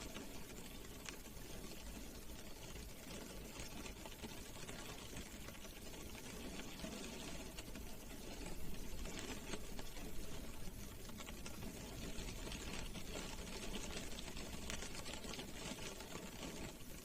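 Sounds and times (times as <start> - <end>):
rain on car roof: 0.0 - 17.0.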